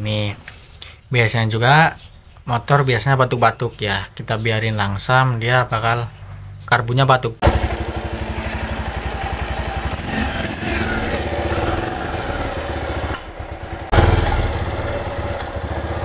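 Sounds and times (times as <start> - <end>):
motorcycle engine idling unevenly: 7.4 - 16.0.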